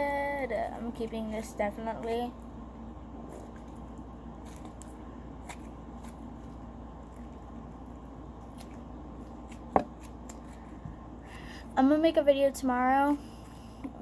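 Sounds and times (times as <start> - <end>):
slime squishing: 0.0 - 12.0.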